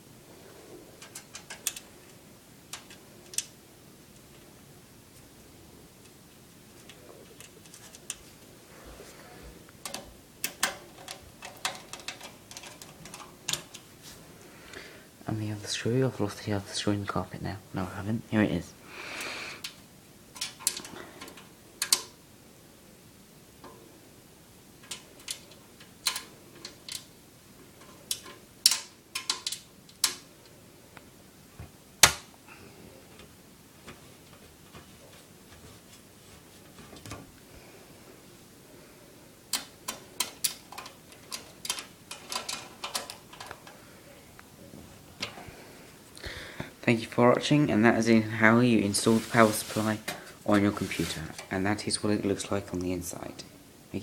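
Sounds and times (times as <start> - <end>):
screwdriver clicking on metal panel: 1.0 - 1.8, 9.8 - 13.9, 20.4 - 22.1, 24.8 - 27.1, 27.8 - 30.2, 39.5 - 43.8.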